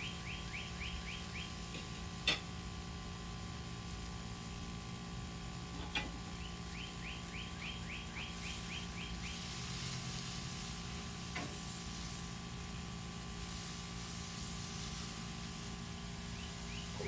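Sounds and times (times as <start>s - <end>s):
bird singing rising notes: 0.0s - 1.6s, 6.4s - 9.4s
steady background hum: 0.0s - 17.0s.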